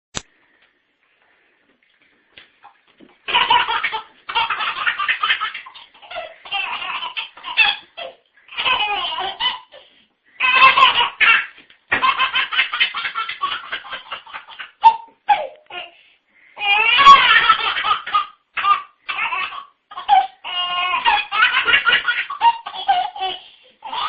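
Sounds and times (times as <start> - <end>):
breaths: 0.3 - 2.6, 9.7 - 10.5, 15.6 - 16.7, 23.2 - 23.8.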